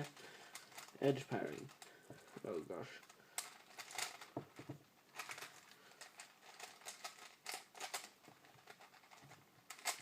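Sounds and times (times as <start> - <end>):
puzzle cube plastic clicking: 3.0 - 4.3, 5.1 - 10.0.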